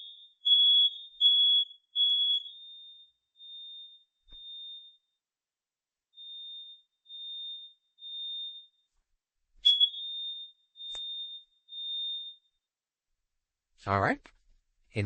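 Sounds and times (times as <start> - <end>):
smoke detector beeping: 0.0 - 5.2, 6.1 - 8.9, 9.6 - 12.7.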